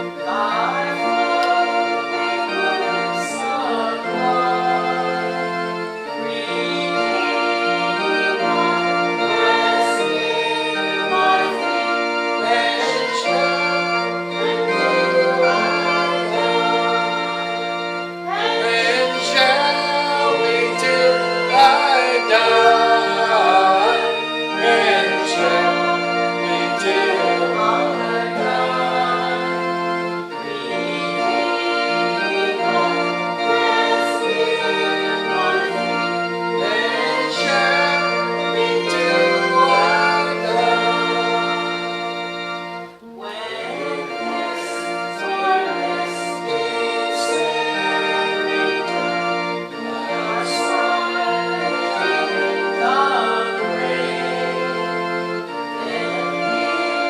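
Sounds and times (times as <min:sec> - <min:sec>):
organ chords: 0:00.0 - 0:57.0
voices singing a hymn: 0:00.0 - 0:57.0.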